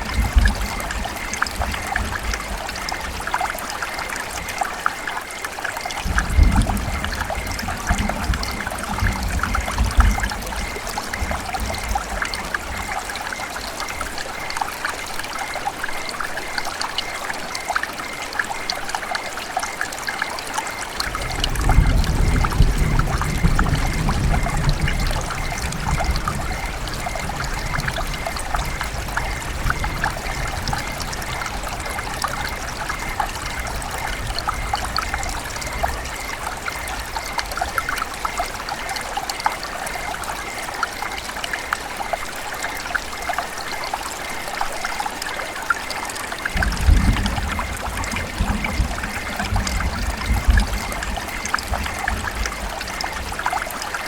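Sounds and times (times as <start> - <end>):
river water babbling: 0.0 - 54.0.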